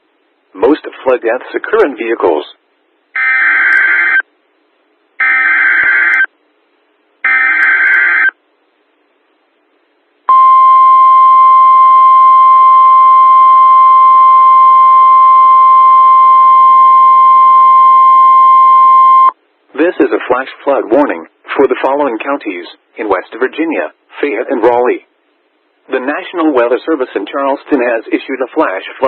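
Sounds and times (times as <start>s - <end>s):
steady warning alarm tone: 3.2s - 4.2s, 5.2s - 6.3s, 7.2s - 8.3s.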